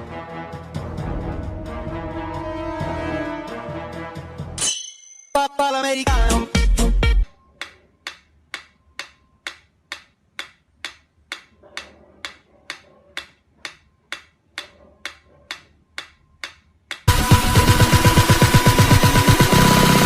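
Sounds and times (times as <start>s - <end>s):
loud music with a beat: 5.4s - 7.4s, 17.1s - 20.0s
clock-like ticking clicks: 7.6s - 17.3s.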